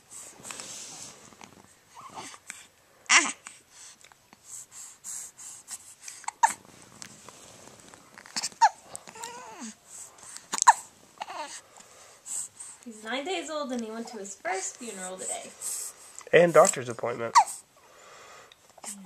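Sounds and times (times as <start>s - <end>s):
baby whimpering: 1.9s - 2.4s, 3.1s - 3.6s, 6.2s - 6.6s, 8.2s - 11.6s, 16.7s - 17.7s
baby hiccuping: 3.1s - 3.4s, 6.2s - 6.6s, 8.3s - 9.7s, 10.5s - 11.6s, 16.6s - 17.6s.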